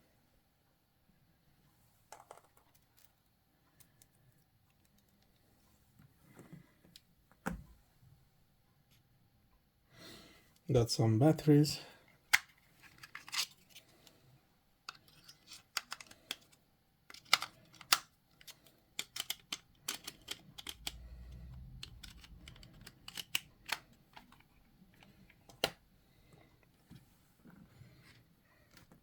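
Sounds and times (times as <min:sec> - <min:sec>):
plastic clicks and taps: 0:17.1 - 0:21.0
low handling rumble: 0:20.6 - 0:24.0.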